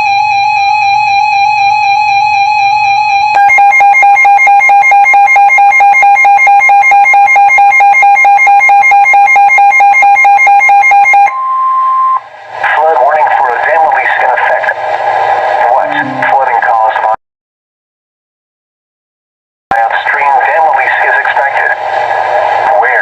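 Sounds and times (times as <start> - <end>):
electronic alert beeps: 15.8 - 16.4.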